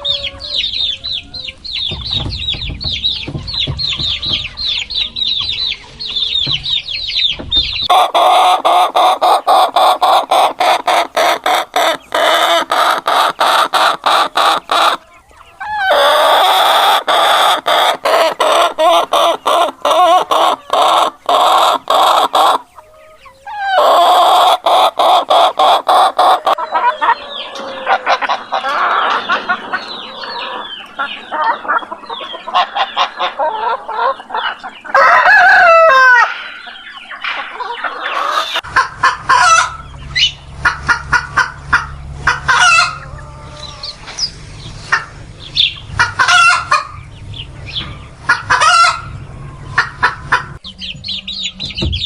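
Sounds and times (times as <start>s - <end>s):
chickens cackling and clucking: 0.0s - 52.0s
low steady hum: 22.6s - 52.0s
rooster crowing: 34.9s - 36.3s.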